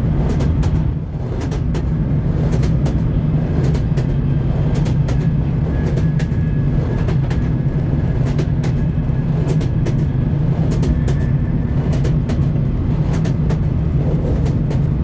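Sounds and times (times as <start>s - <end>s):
low train rumble: 0.0s - 15.0s
train wheels clacking: 0.0s - 15.0s.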